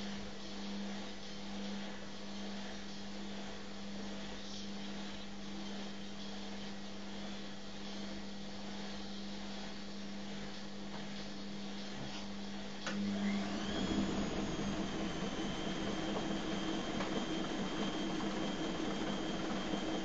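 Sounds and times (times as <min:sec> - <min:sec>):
steady hum: 0:00.0 - 0:20.0
electric motor whine: 0:12.9 - 0:20.0.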